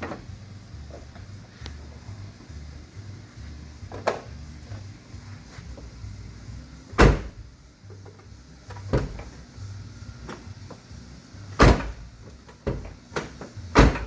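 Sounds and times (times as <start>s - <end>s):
truck door slamming: 7.0s - 7.4s, 11.6s - 12.0s, 12.6s - 14.0s.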